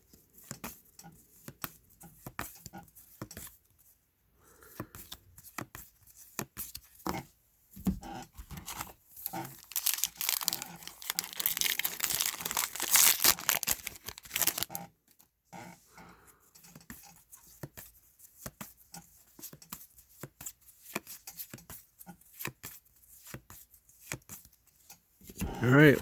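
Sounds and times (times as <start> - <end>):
wrapper tearing and crinkling: 8.6 - 14.8.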